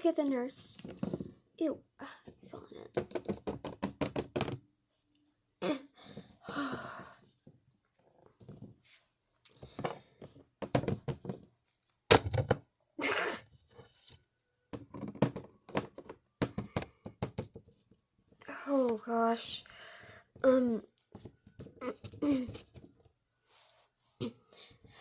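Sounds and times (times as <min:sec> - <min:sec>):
person coughing and retching: 0:13.0 - 0:13.5.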